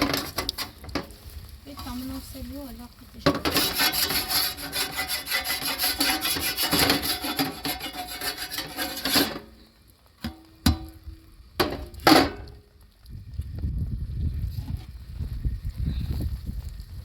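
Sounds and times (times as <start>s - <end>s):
rapid rasping strokes: 3.4s - 9.4s.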